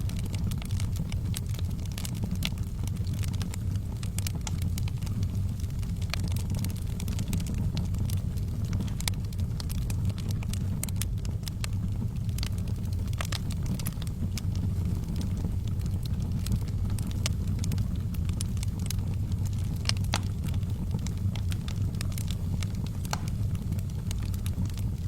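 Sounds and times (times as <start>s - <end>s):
fire crackling and rumbling: 0.0s - 25.0s.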